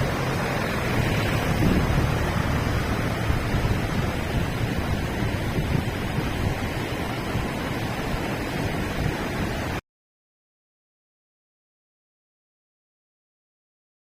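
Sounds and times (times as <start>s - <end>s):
river water rushing: 0.0s - 9.8s
wind buffeting microphone: 0.0s - 9.8s.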